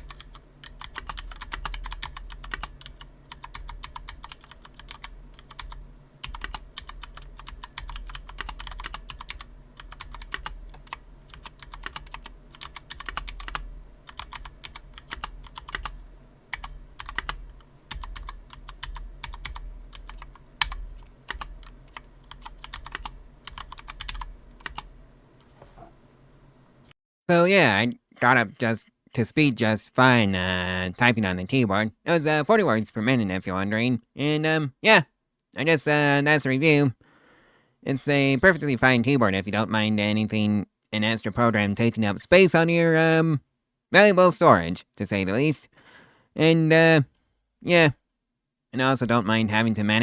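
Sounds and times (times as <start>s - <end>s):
mechanical keyboard typing: 0.0s - 24.9s.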